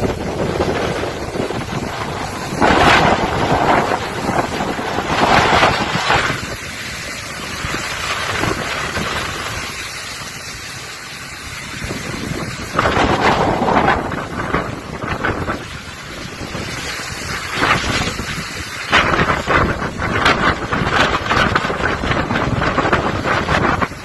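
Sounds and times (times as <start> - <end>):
rush of heavy seas: 0.0 - 24.0
wind buffeting microphone: 0.0 - 24.0.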